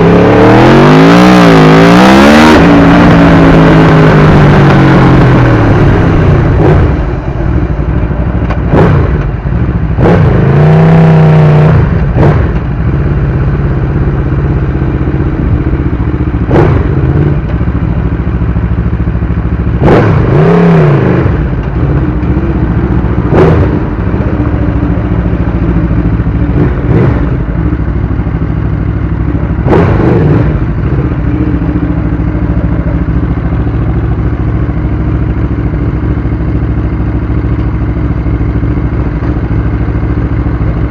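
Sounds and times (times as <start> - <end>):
motorcycle engine idling: 4.5 - 10.1, 11.8 - 19.9, 21.1 - 29.7, 30.4 - 40.9.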